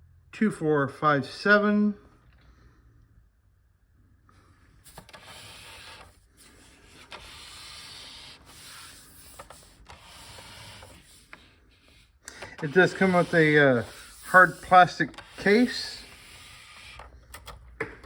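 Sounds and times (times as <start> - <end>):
rubbing and scraping: 4.8 - 17.1.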